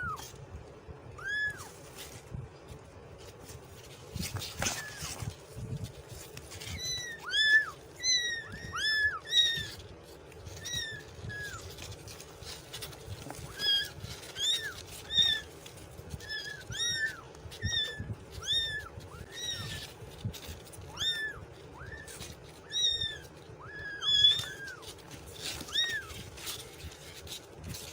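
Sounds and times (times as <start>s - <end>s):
kitten meowing: 1.1s - 1.8s, 6.7s - 9.9s, 16.1s - 26.3s.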